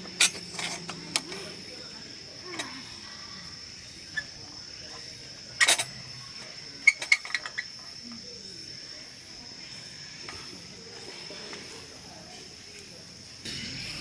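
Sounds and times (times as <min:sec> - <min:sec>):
sharp clicks and knocks: 0:00.0 - 0:01.4
crickets trilling: 0:00.0 - 0:14.0
short clatter: 0:00.1 - 0:01.3.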